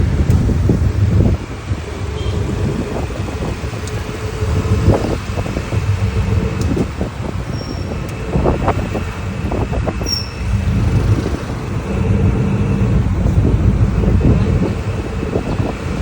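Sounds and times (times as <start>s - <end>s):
engine rumbling steadily: 0.0s - 16.0s.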